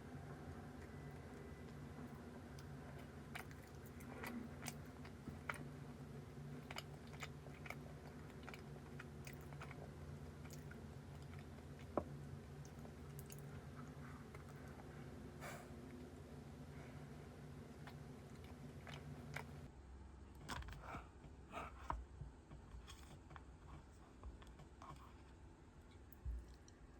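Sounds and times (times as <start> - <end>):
chewing and crunching: 0.0 - 16.1, 16.7 - 19.7, 20.4 - 26.9
low room hum: 0.0 - 26.9.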